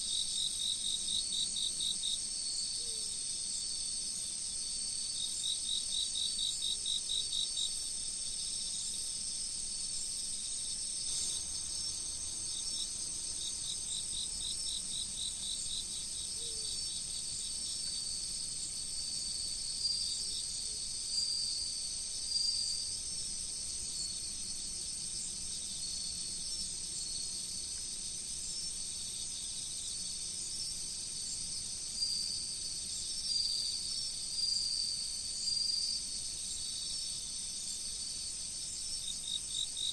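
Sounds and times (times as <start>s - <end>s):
crickets chirping: 0.0s - 39.9s
insects trilling: 9.5s - 24.3s.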